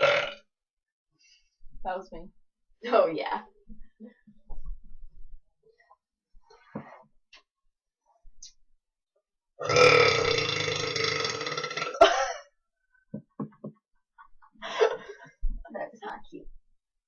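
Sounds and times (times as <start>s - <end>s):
girl burping loudly: 0.0s - 0.4s, 9.6s - 12.4s.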